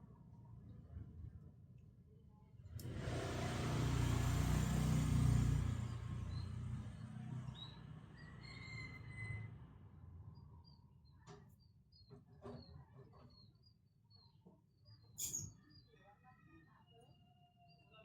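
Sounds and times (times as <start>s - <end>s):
passing vehicle rumble: 2.9s - 8.5s.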